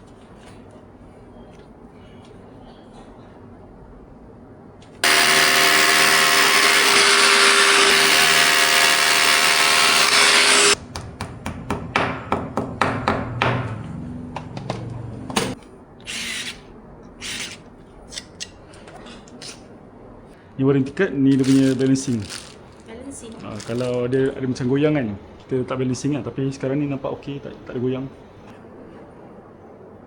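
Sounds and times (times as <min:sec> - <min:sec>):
power drill whining: 0:05.0 - 0:10.8.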